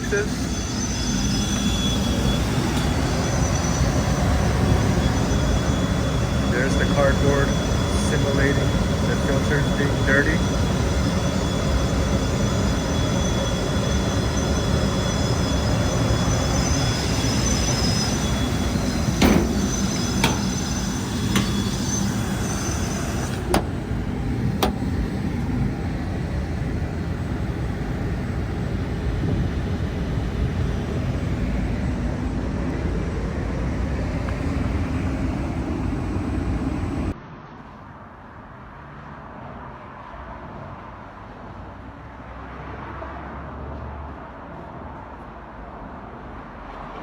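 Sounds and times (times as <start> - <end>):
fan air rush: 0.0 - 37.2
low hum: 0.0 - 37.2.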